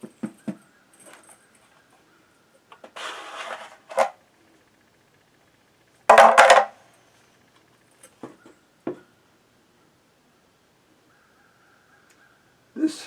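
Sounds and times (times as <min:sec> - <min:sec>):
plastic knocks and rattles: 0:00.0 - 0:00.6, 0:06.1 - 0:06.7.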